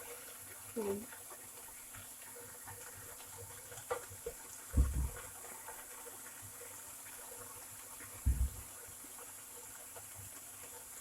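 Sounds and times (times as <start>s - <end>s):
pork frying in oil sizzling: 0.0s - 11.0s
low thumps: 4.8s - 5.2s, 8.3s - 8.6s.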